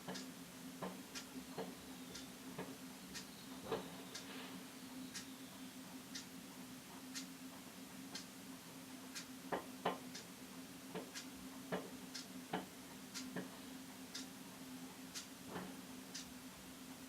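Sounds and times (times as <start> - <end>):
clock ticking: 0.0 - 4.3.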